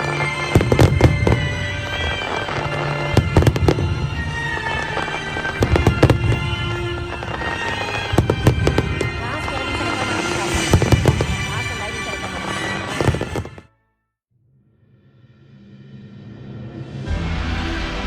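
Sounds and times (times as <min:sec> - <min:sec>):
fireworks exploding: 0:00.0 - 0:13.7
music playing: 0:00.0 - 0:13.8, 0:16.8 - 0:18.0.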